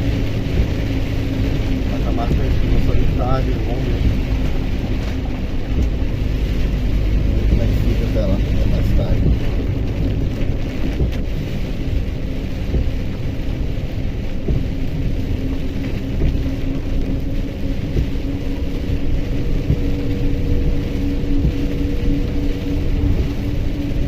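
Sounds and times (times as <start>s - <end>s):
road noise in cab: 0.0s - 24.0s
truck diesel engine rumbling: 0.0s - 24.0s.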